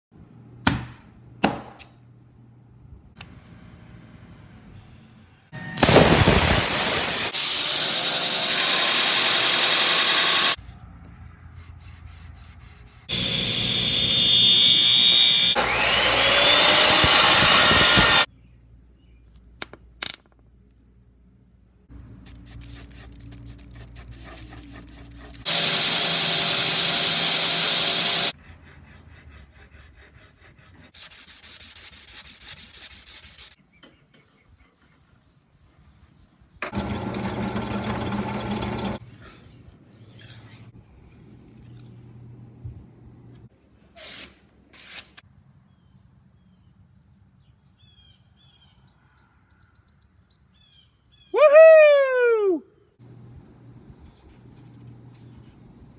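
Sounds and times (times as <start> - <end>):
machine running: 13.1 - 18.3.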